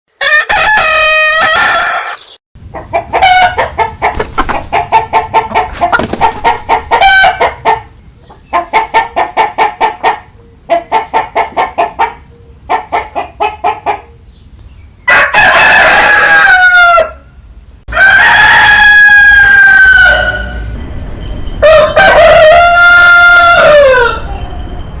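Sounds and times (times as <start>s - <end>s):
rooster crowing: 0.2s - 2.4s, 15.1s - 17.3s, 17.9s - 20.8s, 21.6s - 24.4s
fast clucking: 2.9s - 12.0s.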